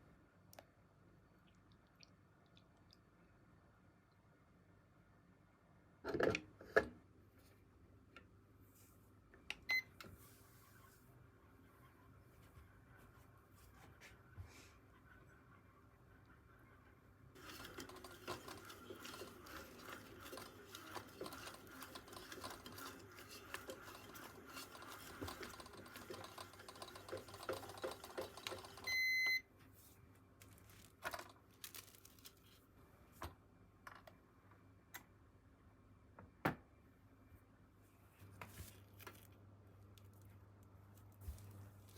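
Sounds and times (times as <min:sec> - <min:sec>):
electronic appliance beep: 0:09.6 - 0:10.0, 0:28.5 - 0:29.5.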